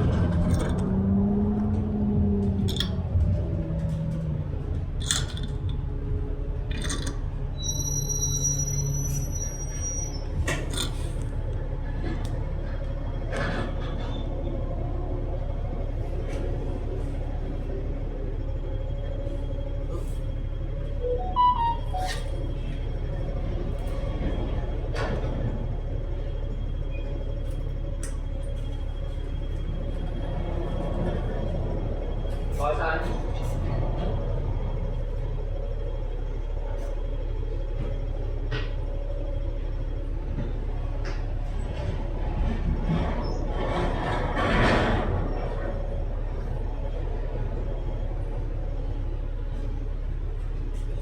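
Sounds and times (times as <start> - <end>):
bus rumbling: 0.0 - 51.0
constant hum: 0.0 - 51.0
rattling clicks: 0.3 - 1.0, 1.6 - 3.1, 4.7 - 5.8, 6.7 - 7.2
electronic chime: 21.0 - 22.4.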